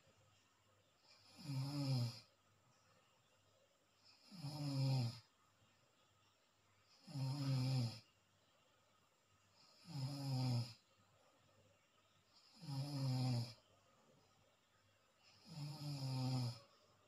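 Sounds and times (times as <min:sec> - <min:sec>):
quiet breathing: 0:00.0 - 0:17.0
person snoring: 0:01.0 - 0:02.3, 0:04.0 - 0:05.3, 0:07.0 - 0:08.0, 0:09.6 - 0:10.8, 0:12.4 - 0:13.6, 0:15.3 - 0:16.7.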